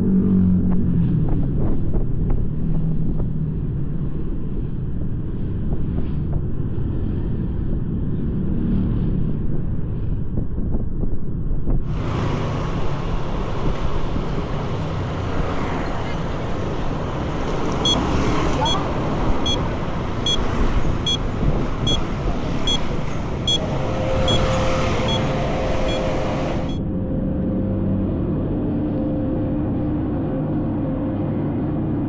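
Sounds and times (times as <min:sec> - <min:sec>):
road traffic rumble: 0:00.0 - 0:32.0
short high beeps: 0:17.8 - 0:26.8.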